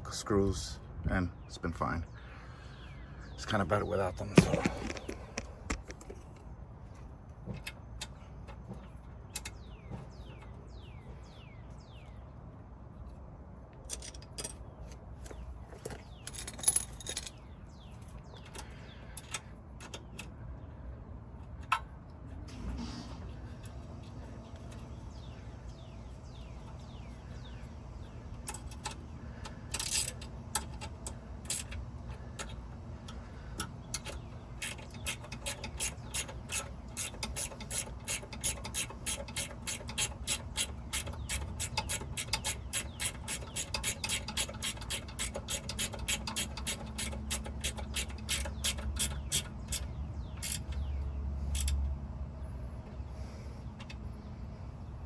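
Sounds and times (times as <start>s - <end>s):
ratchet wrench clicking: 29.7s - 31.8s, 32.4s - 50.8s, 51.5s - 51.8s.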